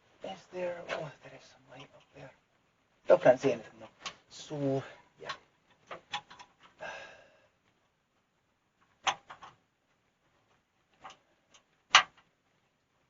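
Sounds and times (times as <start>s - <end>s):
clicks and knocks of parts: 5.2s - 6.8s, 8.7s - 12.8s.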